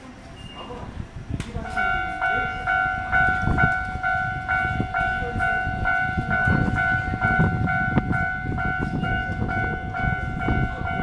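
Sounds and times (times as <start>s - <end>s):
level crossing bell alarm: 1.6s - 11.0s.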